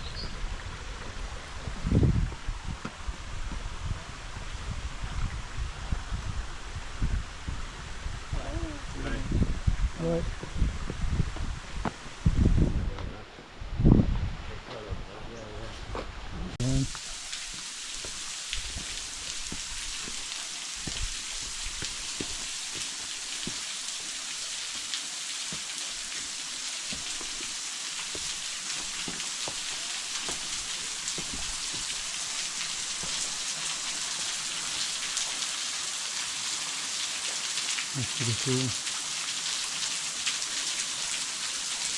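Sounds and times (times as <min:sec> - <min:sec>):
waterfall hissing: 0:00.0 - 0:10.8, 0:16.6 - 0:41.9
water drips and splashes: 0:16.6 - 0:41.9.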